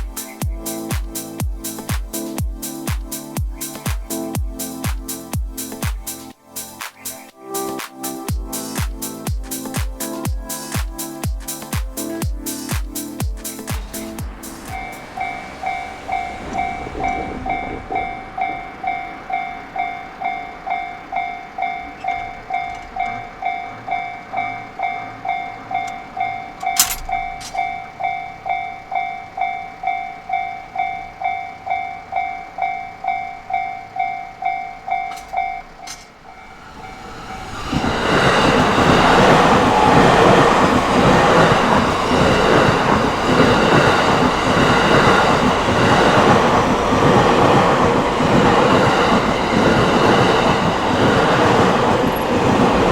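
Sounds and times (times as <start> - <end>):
electric train passing: 0.0 - 52.9
wheels clattering over rail joints: 13.8 - 20.4, 21.1 - 28.6, 33.5 - 52.9
electronic crossing bell ringing: 13.8 - 37.5.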